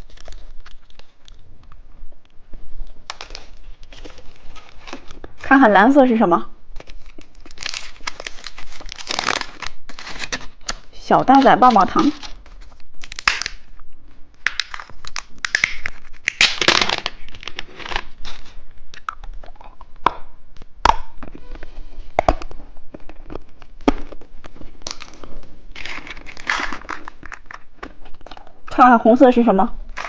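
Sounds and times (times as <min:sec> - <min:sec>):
plastic candy wrapper crinkling: 0:00.0 - 0:01.4, 0:03.0 - 0:05.4, 0:06.7 - 0:13.8, 0:14.4 - 0:20.1, 0:22.2 - 0:28.8.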